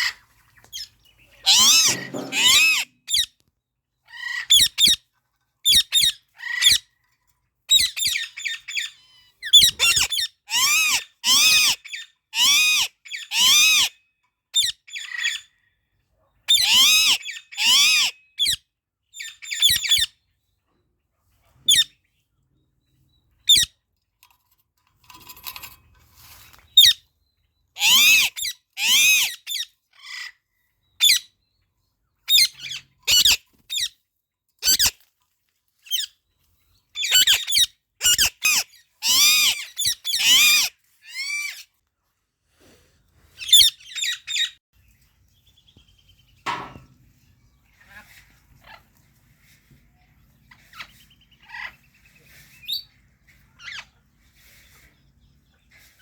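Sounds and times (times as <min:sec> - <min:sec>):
parakeets screeching: 0:01.4 - 0:03.3.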